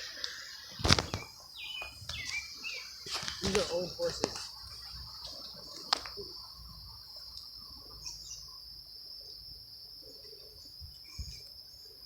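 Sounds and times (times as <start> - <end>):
insects trilling: 0.0 - 12.0
faint bird-like chirps: 4.8 - 8.6, 10.0 - 12.0.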